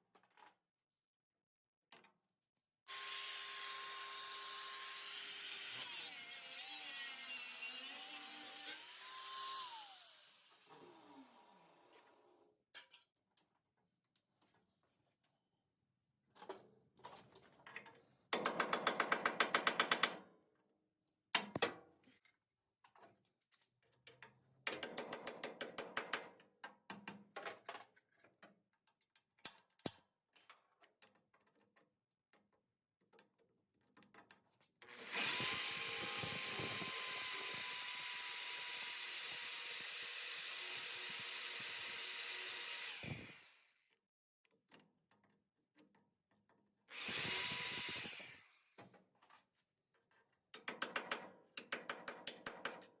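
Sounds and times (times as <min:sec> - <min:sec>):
power drill drilling sheet steel: 0:02.9 - 0:12.2, 0:34.9 - 0:43.9, 0:46.9 - 0:48.9.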